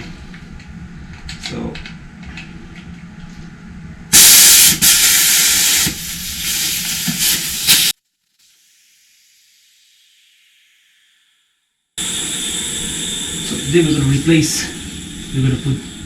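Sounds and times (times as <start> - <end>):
loud rushing hiss: 4.1 - 10.8, 12.0 - 16.0.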